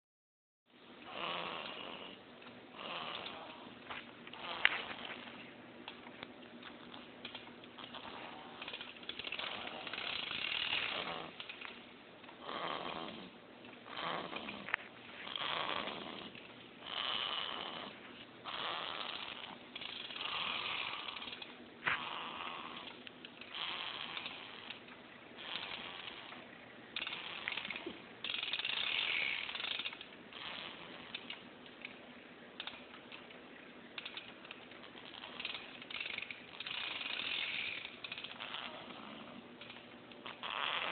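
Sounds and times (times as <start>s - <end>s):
person snoring: 1.1s - 2.2s, 2.8s - 3.8s, 9.4s - 11.4s, 12.4s - 19.6s.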